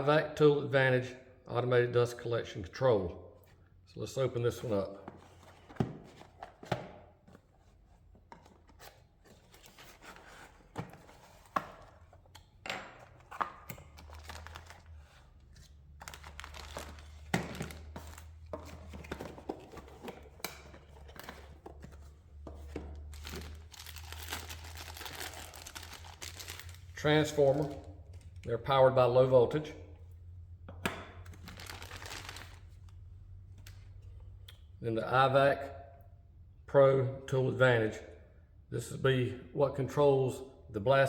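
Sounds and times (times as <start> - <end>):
paper and plastic crinkling: 13.3 - 27.9, 31.3 - 32.8.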